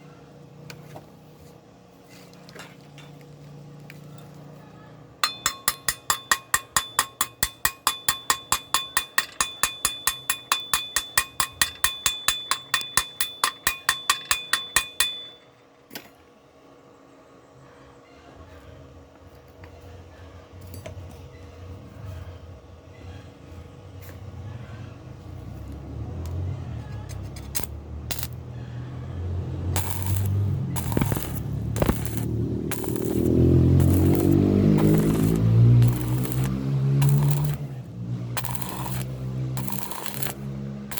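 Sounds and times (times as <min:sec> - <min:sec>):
hammer blows on metal: 0:05.2 - 0:15.4
welding machine humming: 0:27.1 - 0:40.9
crackling hiss of welding arc: 0:27.6 - 0:28.4, 0:29.8 - 0:40.5.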